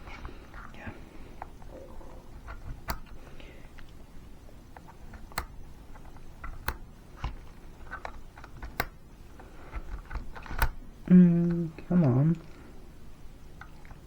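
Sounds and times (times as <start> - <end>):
plastic parts handled: 0.0 - 4.0, 4.7 - 11.6.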